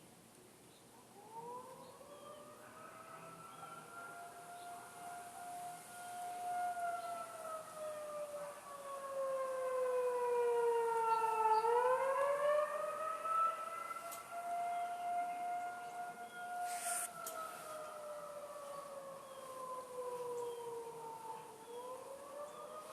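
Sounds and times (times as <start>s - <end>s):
tornado warning siren: 1.1s - 22.9s.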